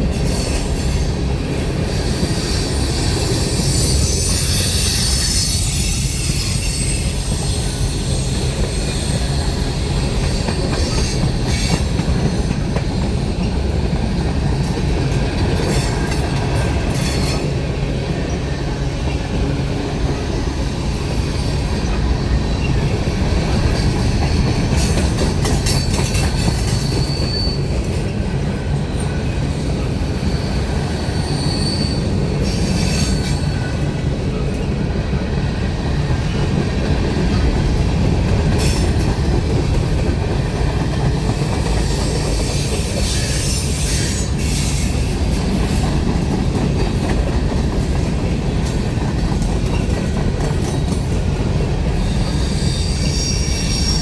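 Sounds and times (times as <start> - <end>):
freight train wheels rumbling: 0.0 - 54.0
high wheel squeals: 0.2 - 13.7, 15.6 - 28.3, 28.9 - 34.0, 41.8 - 45.8, 51.9 - 54.0.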